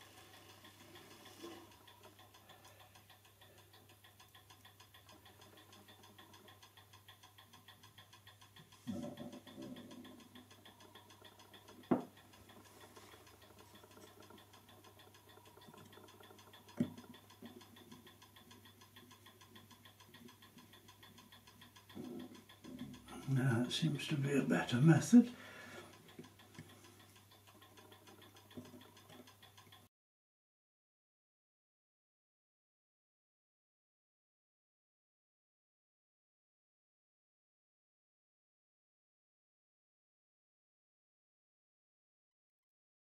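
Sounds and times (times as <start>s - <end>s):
clock ticking fast: 0.0s - 29.9s.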